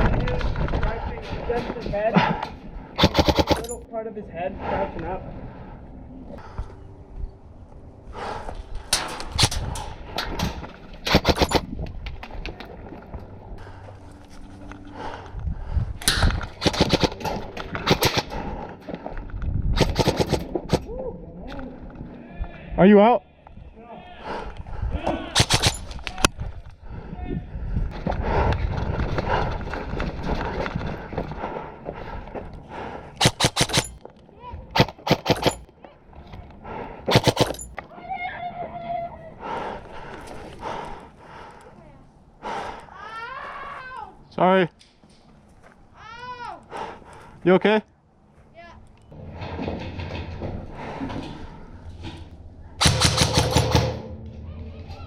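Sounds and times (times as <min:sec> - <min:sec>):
airsoft gun shots: 0:03.0 - 0:03.7, 0:25.4 - 0:25.9, 0:33.2 - 0:34.0, 0:34.8 - 0:35.6, 0:52.8 - 0:54.1
airsoft guns firing: 0:03.0 - 0:03.8, 0:11.1 - 0:11.6, 0:16.1 - 0:18.4, 0:19.8 - 0:20.8, 0:25.3 - 0:25.9, 0:33.2 - 0:34.0, 0:34.8 - 0:35.7, 0:37.1 - 0:37.6, 0:52.8 - 0:54.1.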